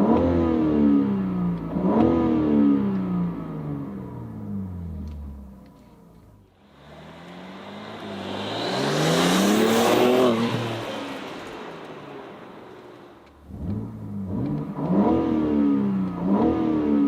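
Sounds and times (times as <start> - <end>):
car engine accelerating past: 6.6 - 17.0.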